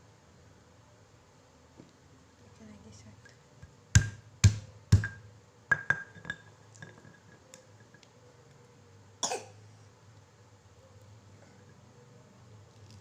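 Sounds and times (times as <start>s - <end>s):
pestle pounding in a mortar: 4.0s - 6.1s.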